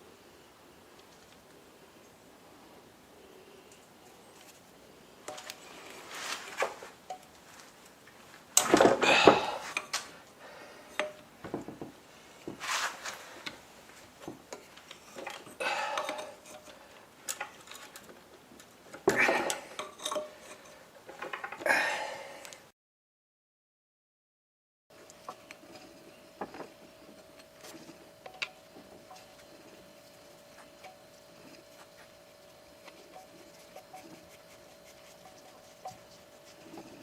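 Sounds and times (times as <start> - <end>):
metal tools clinking and scraping: 14.5 - 18.1, 19.0 - 21.6.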